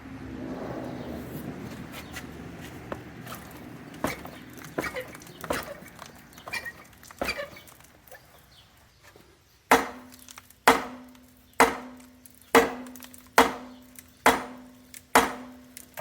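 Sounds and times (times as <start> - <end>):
hammer striking metal: 9.7 - 15.5.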